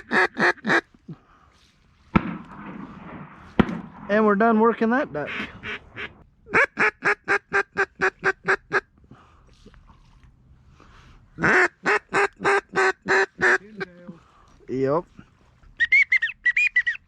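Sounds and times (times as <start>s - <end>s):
duck call quacks: 0.0s - 1.0s, 5.2s - 8.9s, 11.4s - 14.0s, 15.8s - 17.0s.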